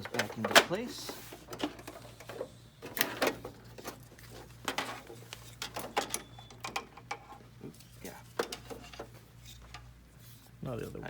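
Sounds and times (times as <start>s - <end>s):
plastic and metal parts clacking: 0.0s - 7.4s, 8.4s - 9.8s.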